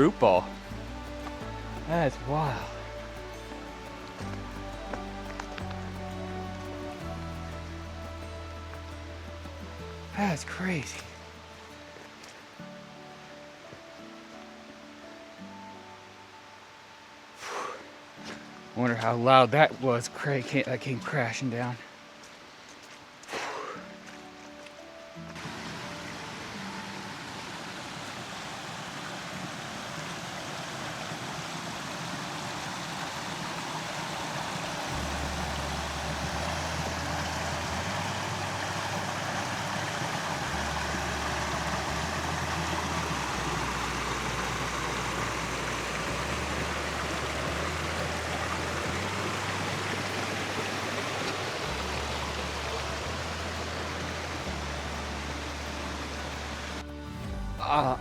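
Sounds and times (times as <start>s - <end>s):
bass line background music: 0.0s - 13.5s, 34.6s - 58.0s
steady rushing water: 0.0s - 57.4s.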